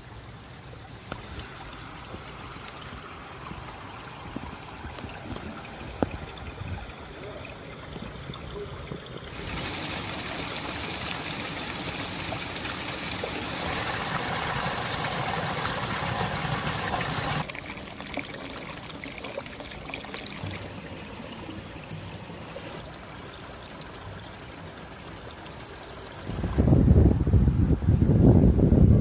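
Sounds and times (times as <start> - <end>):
spring water rushing: 9.1 - 26.9.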